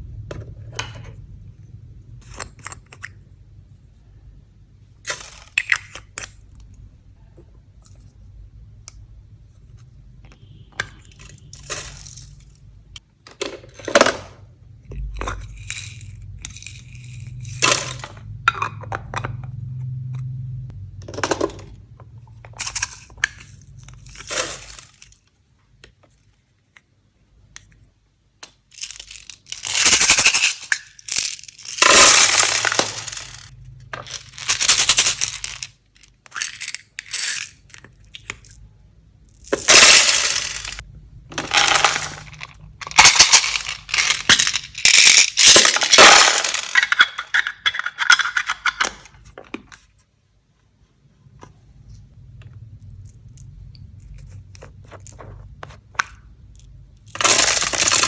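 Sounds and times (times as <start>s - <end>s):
rattling and rustling materials: 10.9s - 12.6s, 13.4s - 20.3s, 21.0s - 25.3s, 28.7s - 38.6s, 39.3s - 50.1s, 51.2s - 58.0s.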